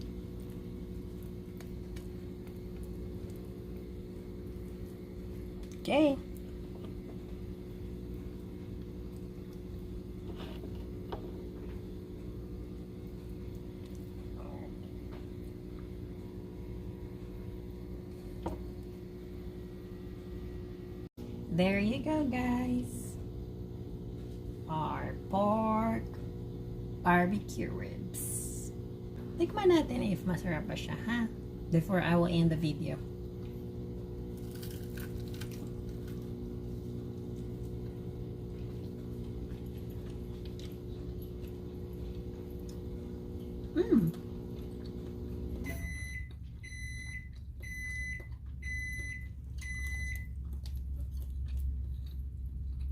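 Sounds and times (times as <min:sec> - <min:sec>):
electrical motor hum: 0:00.0 - 0:52.9
person chewing: 0:34.3 - 0:45.5, 0:47.3 - 0:52.9.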